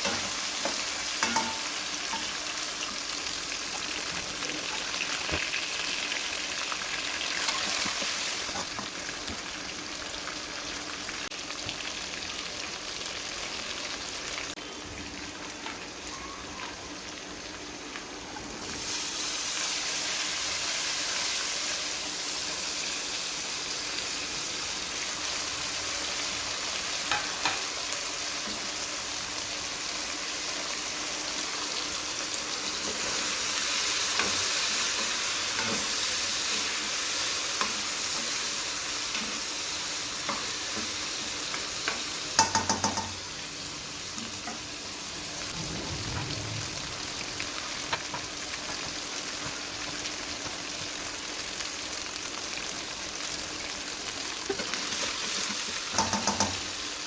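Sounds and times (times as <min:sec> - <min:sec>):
food sizzling in oil: 0:00.0 - 0:57.0
utensil stirring in pan: 0:54.1 - 0:56.7.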